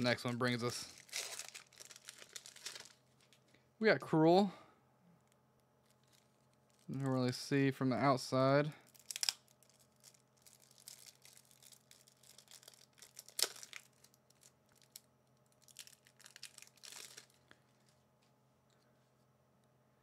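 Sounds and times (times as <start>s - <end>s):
foil wrapper crinkling: 0.0s - 3.5s, 5.8s - 7.2s, 8.8s - 18.0s.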